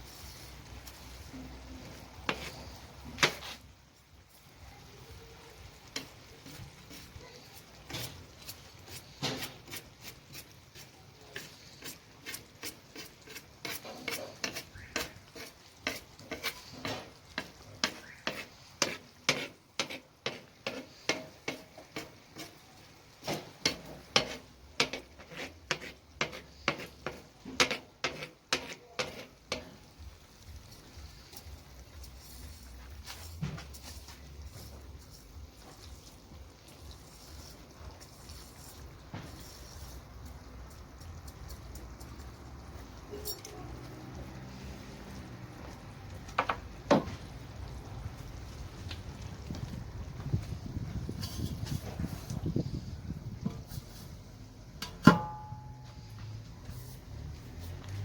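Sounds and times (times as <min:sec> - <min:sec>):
metal utensil scraping a pot: 0:00.0 - 0:03.7, 0:05.8 - 0:29.9, 0:30.6 - 0:42.4, 0:51.1 - 0:54.2, 0:54.8 - 0:58.0
food sizzling: 0:00.0 - 0:58.0.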